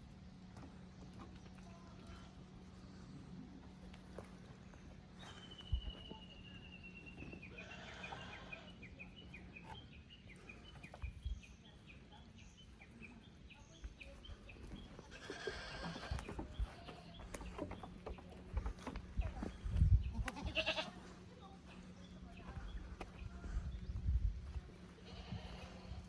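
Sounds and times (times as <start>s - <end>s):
goat kids bleating: 7.4s - 8.8s, 15.0s - 17.5s, 20.0s - 21.2s, 24.9s - 26.0s.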